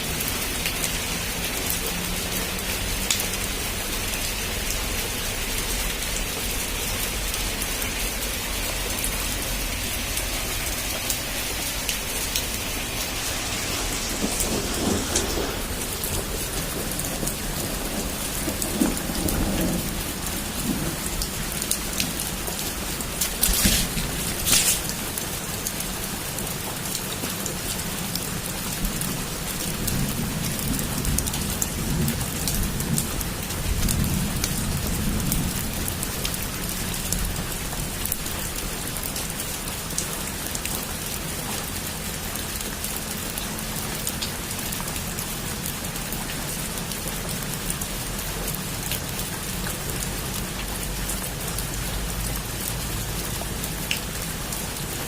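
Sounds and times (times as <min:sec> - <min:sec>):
heavy rain on a roof: 0:00.0 - 0:55.0
thunder rumble: 0:05.9 - 0:25.4.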